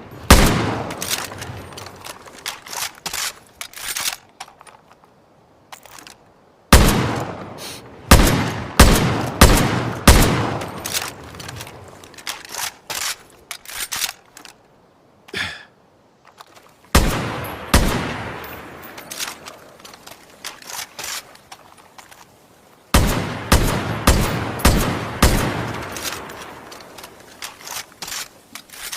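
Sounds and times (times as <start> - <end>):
rifle shots with echo: 0.2 - 1.7, 6.7 - 7.5, 8.1 - 11.2, 17.0 - 19.5, 22.9 - 26.6.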